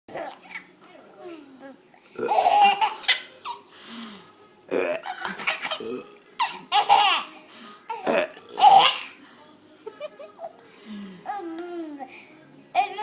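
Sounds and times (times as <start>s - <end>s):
baby laughing: 2.3s - 3.6s, 6.4s - 8.0s, 8.6s - 9.1s.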